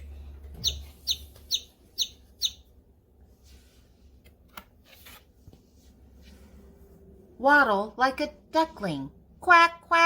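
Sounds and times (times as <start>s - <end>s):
baby chick peeping: 0.0s - 2.8s.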